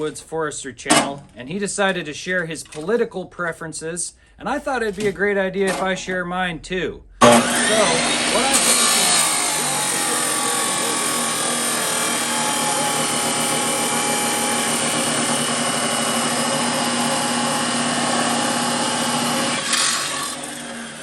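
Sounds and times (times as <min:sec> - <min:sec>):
power tool running: 0:07.2 - 0:21.0.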